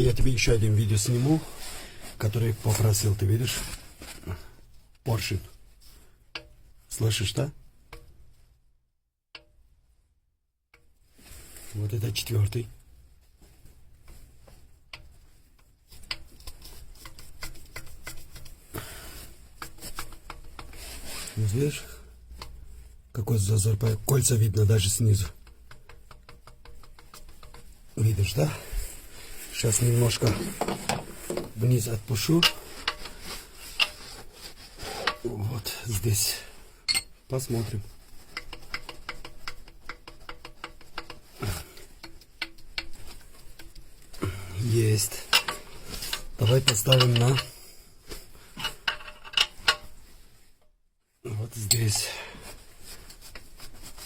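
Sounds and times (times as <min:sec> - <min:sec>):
piston clicking and tapping in bore: 0:06.3 - 0:06.6, 0:14.9 - 0:18.6, 0:25.3 - 0:27.8, 0:38.3 - 0:43.8.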